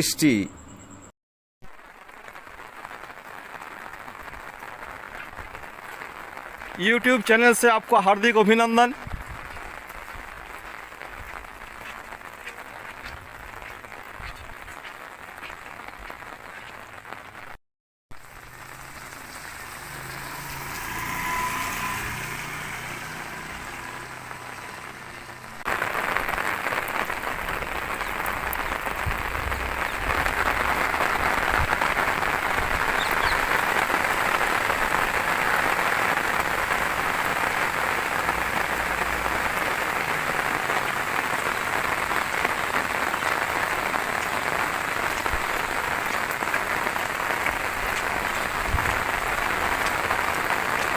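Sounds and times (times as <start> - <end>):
rain hissing: 18.2 - 50.9.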